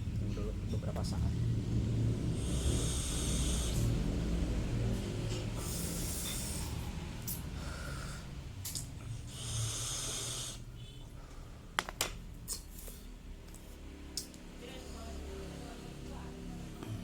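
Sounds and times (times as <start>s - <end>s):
person breathing vape hissing: 2.2s - 8.5s, 9.1s - 11.7s.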